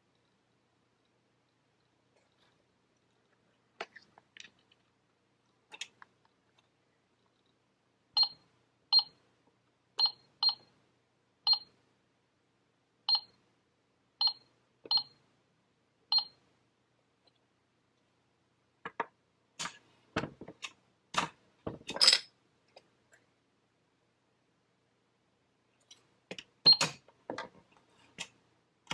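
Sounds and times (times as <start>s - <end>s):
toy cash register beeps: 10.0s - 10.6s, 14.2s - 15.1s.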